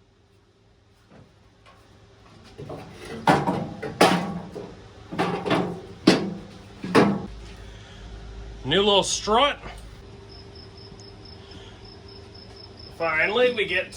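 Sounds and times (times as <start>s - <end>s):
sheet metal clunks and rattles: 2.4s - 7.3s.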